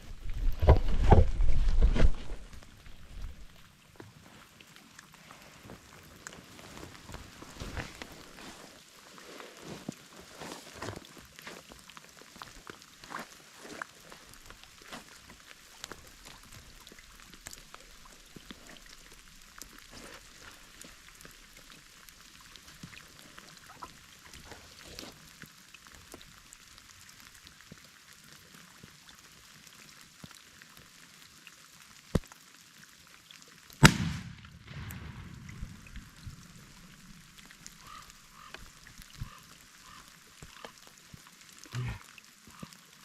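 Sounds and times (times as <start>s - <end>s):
light rain dripping: 0.0s - 43.0s
shotgun blast with echo: 33.8s - 35.5s.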